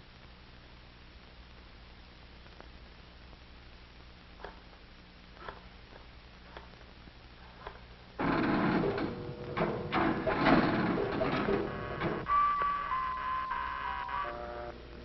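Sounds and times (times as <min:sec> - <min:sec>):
machine clattering rapidly: 0:08.2 - 0:12.3
steady pitched music tones: 0:11.6 - 0:15.0.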